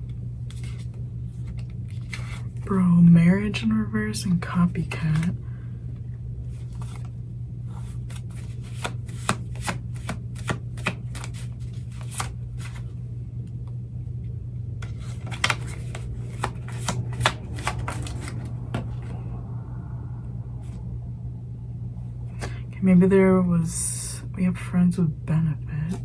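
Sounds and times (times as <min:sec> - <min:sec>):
steady low hum: 0:00.0 - 0:26.0
cards being shuffled: 0:00.4 - 0:02.6, 0:04.9 - 0:05.3, 0:06.5 - 0:07.1, 0:07.7 - 0:13.0, 0:14.8 - 0:19.2.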